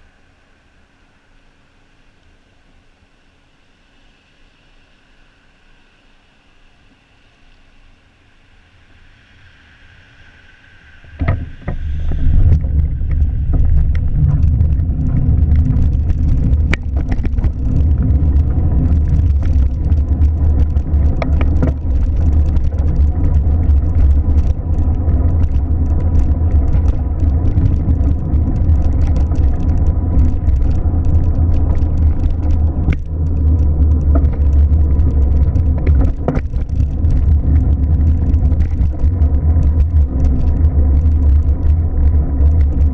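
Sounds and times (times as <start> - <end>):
car engine rumbling: 10.8 - 42.9.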